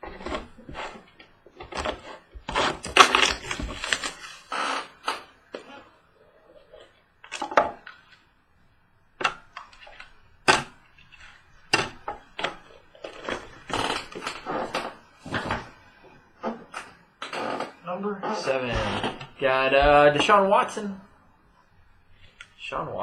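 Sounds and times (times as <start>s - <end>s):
cardboard and wrapper crinkling: 0.0s - 5.0s, 10.8s - 15.7s.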